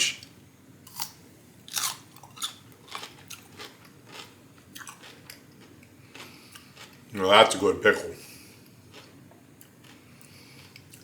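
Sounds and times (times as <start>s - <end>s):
crunchy pickle chewing: 0.9s - 7.0s, 8.9s - 11.0s.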